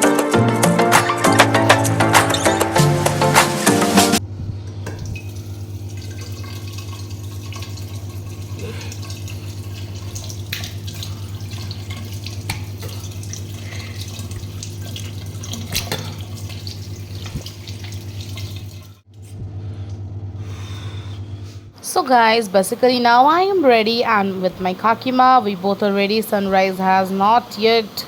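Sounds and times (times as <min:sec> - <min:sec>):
steady low hum: 0:04.2 - 0:27.6
tap water running into sink: 0:04.8 - 0:19.0.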